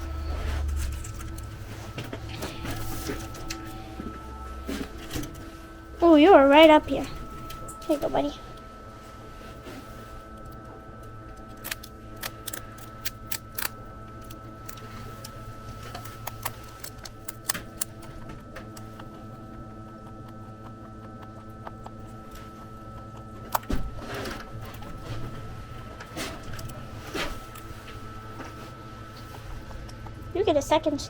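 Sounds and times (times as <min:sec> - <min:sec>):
steady mechanical hum: 0:00.0 - 0:31.0
rabbit crunching celery: 0:11.4 - 0:25.4.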